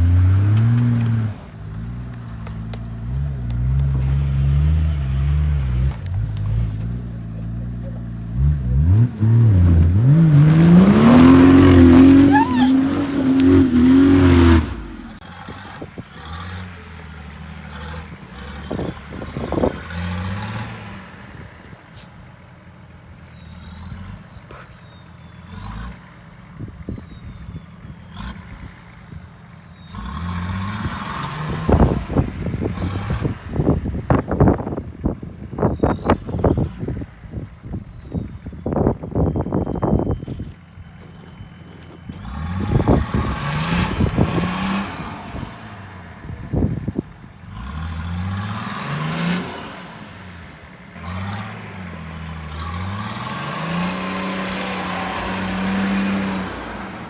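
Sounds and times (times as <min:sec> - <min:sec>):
diesel engine revving: 0:00.0 - 0:57.0
thin high whistle: 0:11.1 - 0:13.8.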